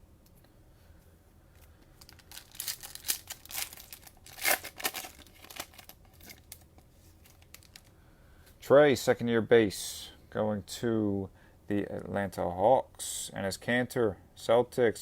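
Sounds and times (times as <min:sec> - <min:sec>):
cellophane wrapper crinkling and tearing: 0:02.0 - 0:07.9.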